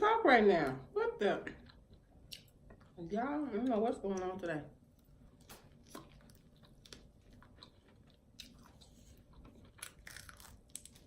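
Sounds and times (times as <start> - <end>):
chewing crispy chicken: 5.0 - 11.0.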